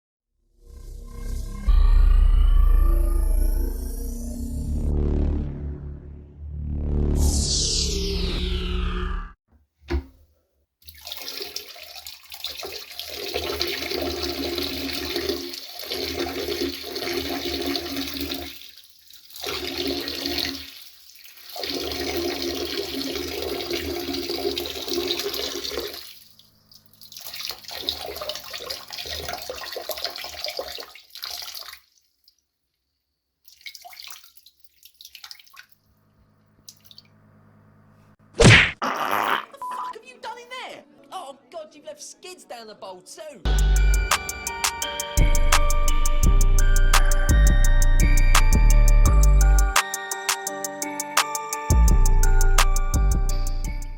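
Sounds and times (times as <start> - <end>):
urine splashing into toilet water: 10.8 - 32.5, 33.4 - 35.9.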